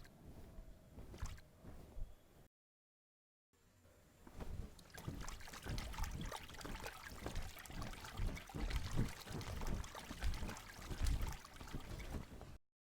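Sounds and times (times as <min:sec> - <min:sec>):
bird wings flapping: 0:04.3 - 0:12.6.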